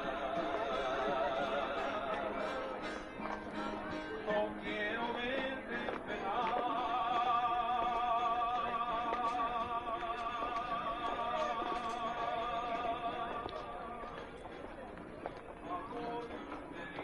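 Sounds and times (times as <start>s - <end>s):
operatic singer with vibrato: 0.0s - 2.9s, 4.1s - 14.2s.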